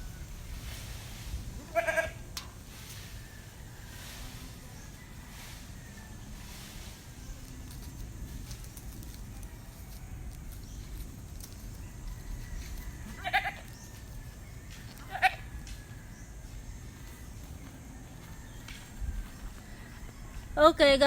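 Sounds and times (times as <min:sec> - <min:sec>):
goat bleating: 0:01.6 - 0:02.2, 0:13.2 - 0:13.7.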